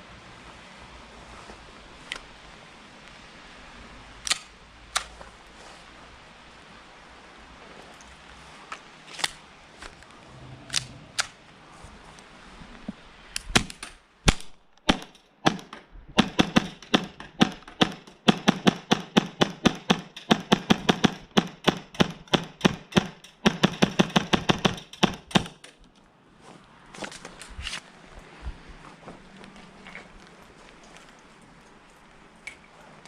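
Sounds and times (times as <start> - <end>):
airsoft pistol shots: 13.5 - 25.6.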